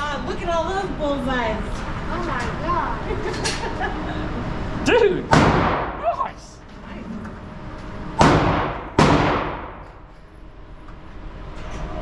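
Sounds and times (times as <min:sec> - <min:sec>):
gunshots echoing: 0:05.3 - 0:06.0, 0:08.2 - 0:09.8.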